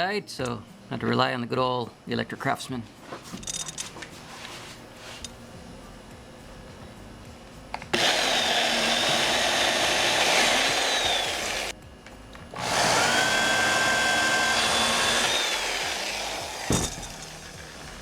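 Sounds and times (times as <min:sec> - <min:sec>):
electric drill whining: 0:07.9 - 0:11.7, 0:12.5 - 0:18.0.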